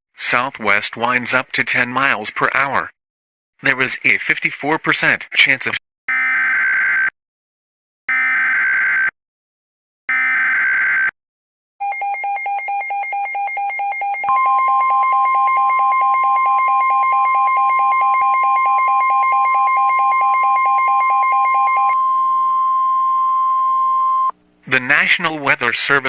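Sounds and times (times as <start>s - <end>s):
high steady tone: 11.8s - 25.0s.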